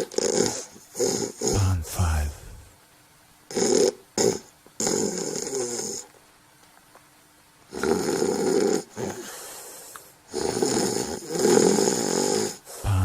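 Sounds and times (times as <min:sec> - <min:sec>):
person snoring: 0:01.4 - 0:02.7, 0:10.4 - 0:13.0.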